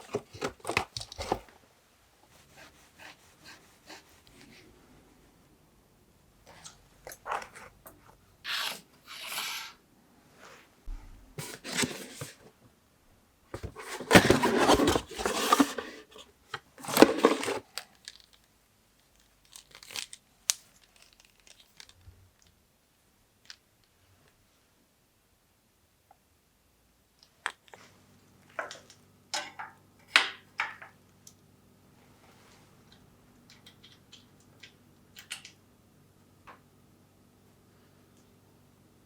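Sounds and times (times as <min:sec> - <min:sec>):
tearing and crinkling: 0:16.8 - 0:22.0.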